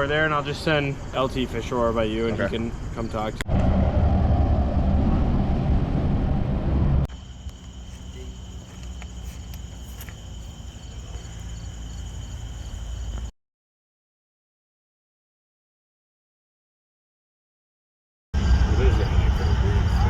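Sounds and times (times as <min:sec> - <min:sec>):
crickets chirping: 0:00.0 - 0:03.4, 0:07.1 - 0:13.3, 0:18.4 - 0:20.0
loud low rumble: 0:03.5 - 0:07.1.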